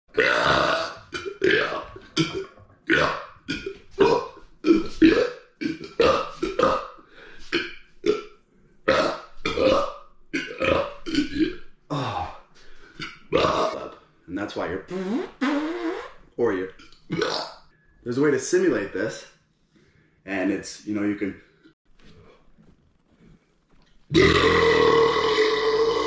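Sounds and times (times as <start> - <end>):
man belching: 0.1 - 8.3, 8.9 - 12.4, 13.0 - 13.9, 17.1 - 17.5, 24.1 - 26.0.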